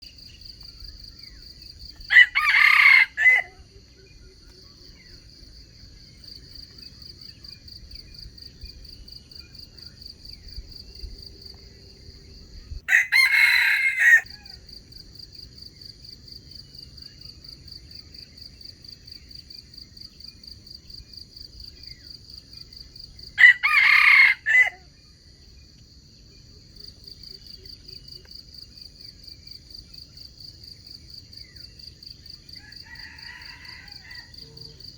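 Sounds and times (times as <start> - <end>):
rooster crowing: 2.1 - 3.7, 12.9 - 14.7, 23.4 - 24.9, 32.5 - 34.9.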